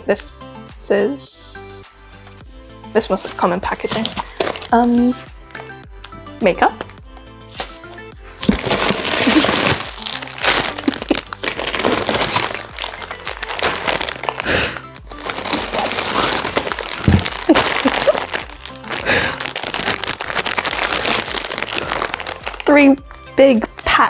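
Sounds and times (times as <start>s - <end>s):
background music: 0.0s - 24.0s
packaging crinkling and rustling: 3.8s - 4.8s, 7.5s - 23.3s.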